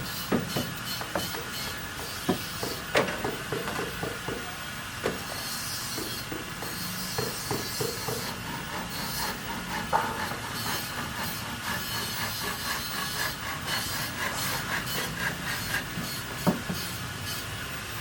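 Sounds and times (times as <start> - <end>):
scraping strokes of building work: 5.2 - 17.5.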